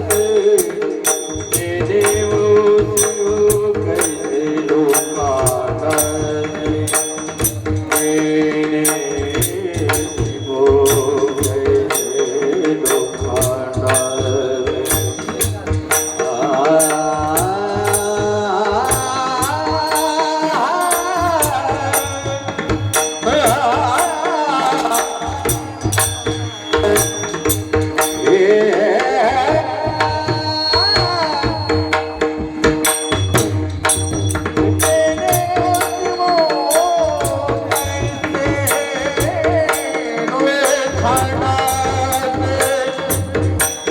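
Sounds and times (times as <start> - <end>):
held drone accompaniment: 0.0 - 28.6
man singing devotional tune: 0.0 - 32.2, 34.8 - 43.9
hand drum: 0.0 - 43.9
metallic strokes keeping beat: 0.0 - 43.9.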